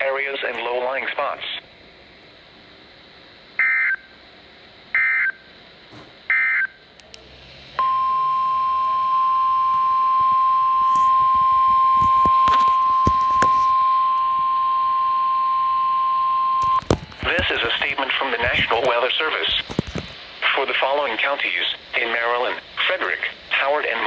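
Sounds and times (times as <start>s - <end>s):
steady warning alarm tone: 3.6s - 4.1s, 5.0s - 5.5s, 6.3s - 6.8s, 7.8s - 16.8s
static crackles: 10.2s - 14.4s, 16.6s - 24.0s.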